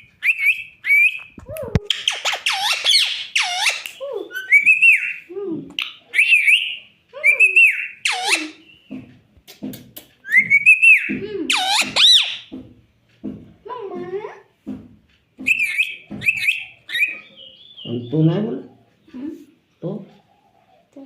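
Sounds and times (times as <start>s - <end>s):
parrot whistling: 0.0s - 8.9s, 10.2s - 12.5s, 15.4s - 17.9s
parrot squawky chirps: 1.9s - 8.8s, 10.3s - 12.5s, 15.5s - 17.9s.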